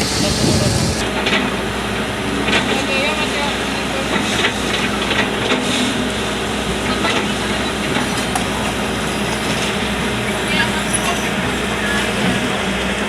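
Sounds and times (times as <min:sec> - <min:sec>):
gravel rushing: 0:00.0 - 0:01.0
excavator diesel engine: 0:00.0 - 0:13.0.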